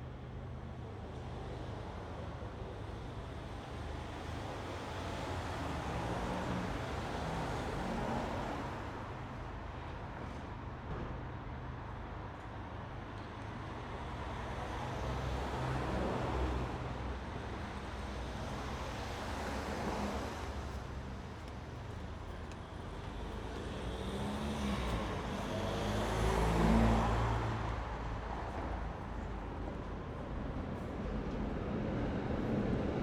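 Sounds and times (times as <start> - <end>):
cars passing: 22.8 - 30.6.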